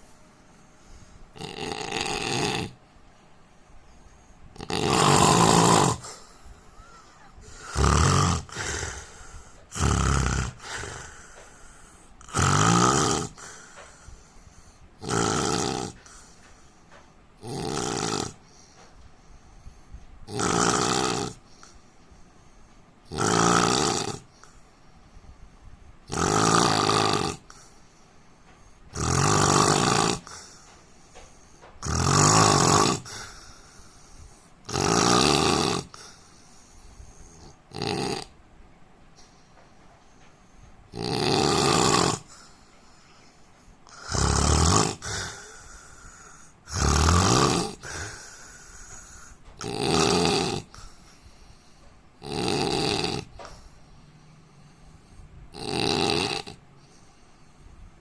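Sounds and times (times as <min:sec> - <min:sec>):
man snoring loudly: 0:01.4 - 0:02.8, 0:04.6 - 0:06.3, 0:07.5 - 0:11.4, 0:12.2 - 0:14.0, 0:15.0 - 0:16.2, 0:17.4 - 0:18.4, 0:20.3 - 0:21.6, 0:23.1 - 0:24.4, 0:26.1 - 0:27.6, 0:28.9 - 0:30.6, 0:31.8 - 0:33.4, 0:34.6 - 0:36.2, 0:37.3 - 0:38.3, 0:40.9 - 0:42.4, 0:43.9 - 0:51.0, 0:52.2 - 0:53.6, 0:55.5 - 0:57.1.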